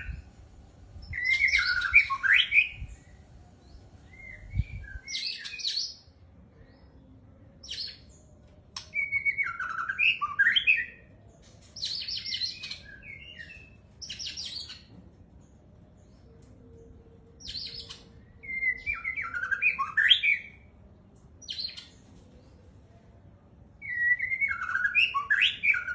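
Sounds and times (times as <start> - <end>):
songbird singing whistled phrases: 1.0 - 6.1, 7.6 - 11.0, 17.4 - 20.7, 23.8 - 25.9.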